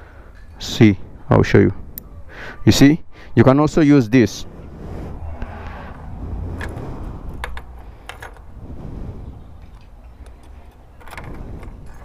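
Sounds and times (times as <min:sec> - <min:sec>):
low handling rumble: 0:04.0 - 0:12.0
small parts clicking and clinking: 0:07.4 - 0:08.5, 0:09.6 - 0:12.0.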